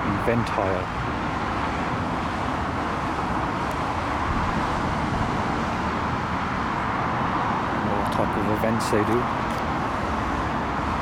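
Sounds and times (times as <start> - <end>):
road traffic hum: 0.0 - 11.0.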